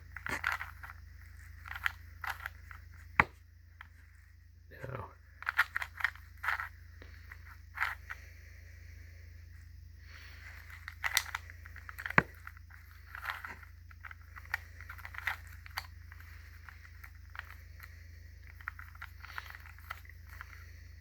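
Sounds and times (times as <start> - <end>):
rubik's cube clicking and rattling: 0.1 - 4.0, 5.4 - 6.7, 10.4 - 20.8.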